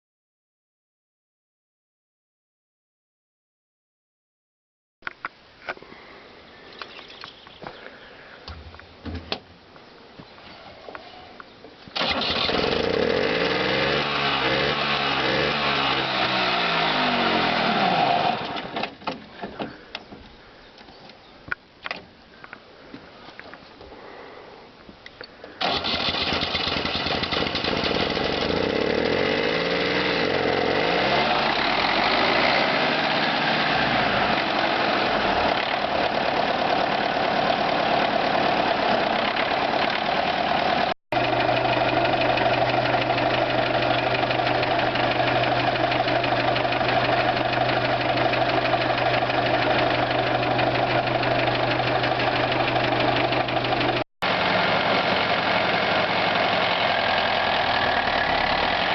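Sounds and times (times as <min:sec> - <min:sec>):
tractor diesel engine running: 0:12.0 - 0:19.9, 0:25.6 - 0:58.9.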